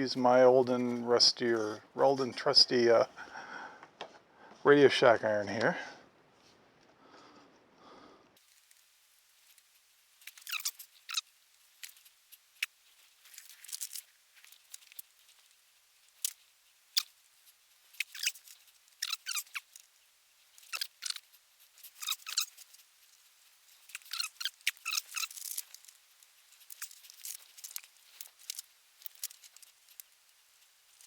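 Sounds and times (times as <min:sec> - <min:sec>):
small scratchy clicks and scrapes: 0:08.4 - 0:31.0.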